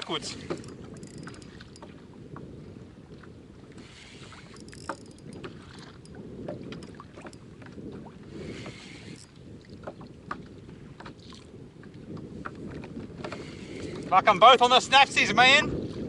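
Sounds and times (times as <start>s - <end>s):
water lapping at kayak: 0.0s - 16.0s
wind buffeting microphone: 0.0s - 16.0s
small clicks and knocks: 0.5s - 1.9s, 4.6s - 7.4s.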